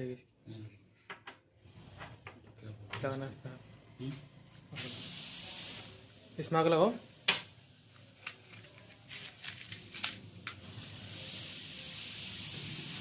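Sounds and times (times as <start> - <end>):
steady fire hiss: 4.7 - 8.6, 9.4 - 13.0.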